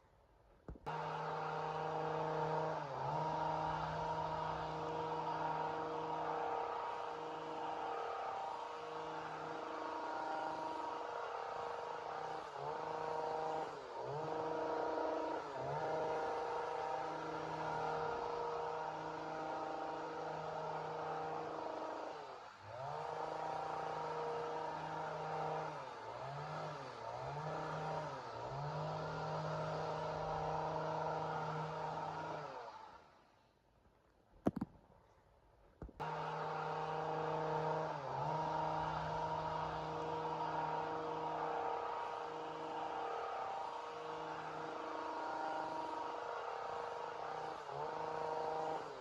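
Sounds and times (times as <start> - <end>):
chainsaw revving: 0.9 - 33.0, 36.0 - 49.0.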